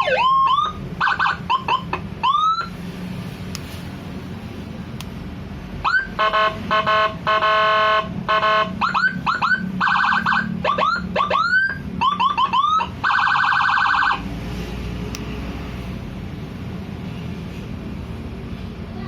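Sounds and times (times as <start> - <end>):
electronic siren whoop chirps: 0.0 - 2.7
buzzing siren horn tone: 5.9 - 14.2.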